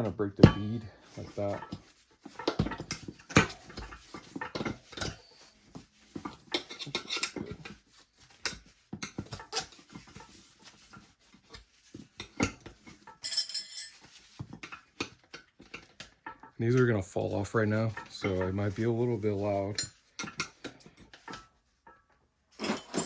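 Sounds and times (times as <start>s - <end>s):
tire spoons clinking on rim: 13.2s - 14.2s.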